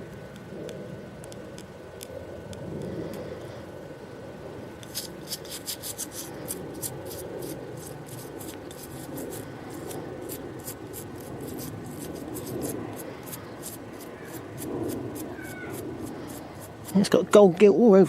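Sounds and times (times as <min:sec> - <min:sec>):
toothbrush scrubbing metal: 0:04.8 - 0:17.2.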